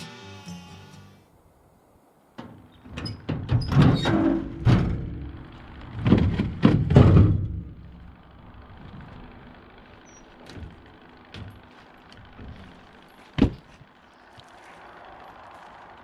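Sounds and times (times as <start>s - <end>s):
heavy thuds and bangs: 3.2s - 7.9s, 13.3s - 13.8s.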